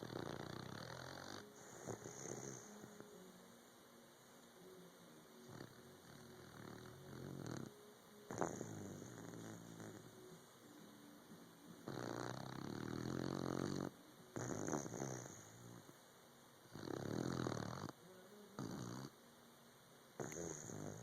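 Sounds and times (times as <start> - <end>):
puppy snoring: 0.0 - 3.2, 5.4 - 10.4, 11.8 - 15.9, 16.7 - 18.0, 18.6 - 19.2, 20.2 - 21.0.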